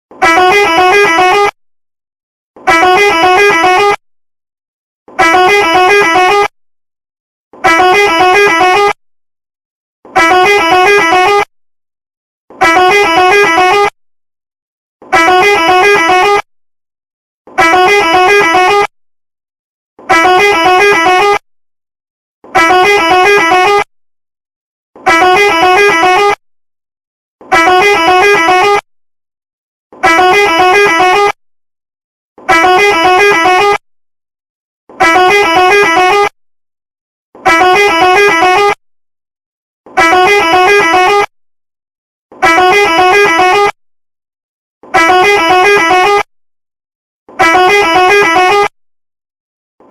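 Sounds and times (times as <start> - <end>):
multi-tone musical bus horn: 0.1 - 1.6, 2.5 - 4.0, 5.0 - 6.6, 7.5 - 9.0, 10.0 - 11.5, 12.5 - 14.0, 15.0 - 16.5, 17.5 - 19.0, 20.0 - 21.5, 22.4 - 23.9, 24.9 - 26.4, 27.4 - 28.9, 29.9 - 31.4, 32.4 - 33.8, 34.9 - 36.4, 37.3 - 38.8, 39.8 - 41.4, 42.3 - 43.8, 44.8 - 46.3, 47.2 - 48.8.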